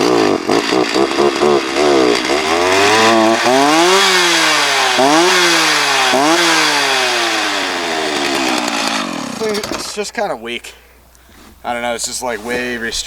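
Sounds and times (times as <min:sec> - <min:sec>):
chainsaw revving: 0:00.0 - 0:10.1.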